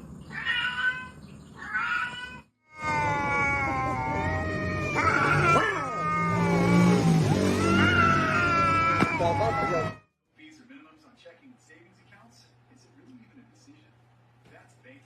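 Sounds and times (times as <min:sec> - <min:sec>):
cat meowing: 0:00.3 - 0:10.0
cat yowling: 0:00.3 - 0:10.0.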